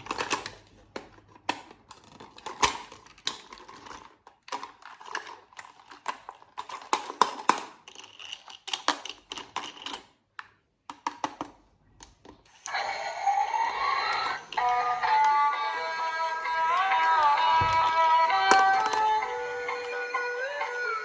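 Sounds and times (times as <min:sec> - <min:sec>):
toy packaging being opened: 0:00.0 - 0:10.2, 0:16.5 - 0:20.9.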